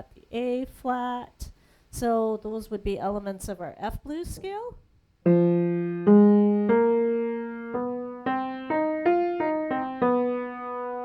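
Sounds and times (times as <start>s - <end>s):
piano playing notes and chords: 5.2s - 11.0s.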